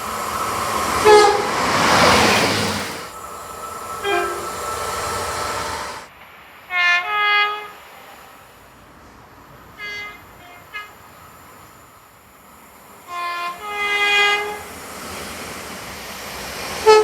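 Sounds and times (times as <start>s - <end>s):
train horn blasts: 0.0s - 3.2s, 3.8s - 4.7s, 6.7s - 8.0s, 9.8s - 11.2s, 13.1s - 14.7s
passing train rushing: 0.0s - 17.0s.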